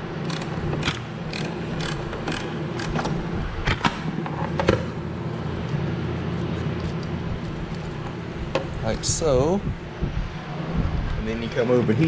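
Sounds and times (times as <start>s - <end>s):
steady hum: 0.0s - 12.0s
wrench clicking on metal terminal: 0.2s - 3.1s.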